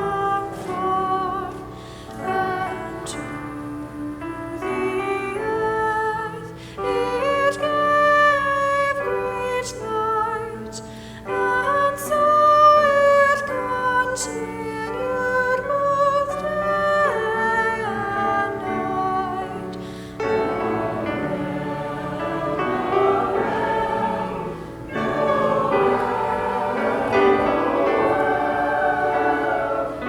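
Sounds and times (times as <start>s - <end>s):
choir singing: 0.0s - 10.0s, 11.4s - 30.0s
musical accompaniment: 20.1s - 30.0s.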